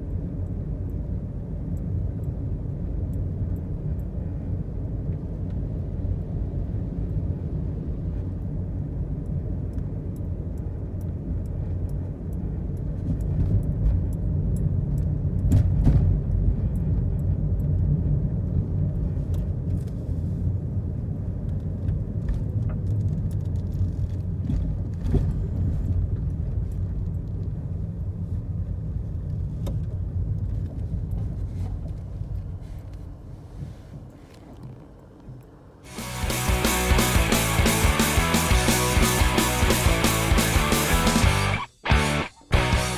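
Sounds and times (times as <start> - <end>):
steady low rumble: 0.0 - 33.5, 35.9 - 42.9.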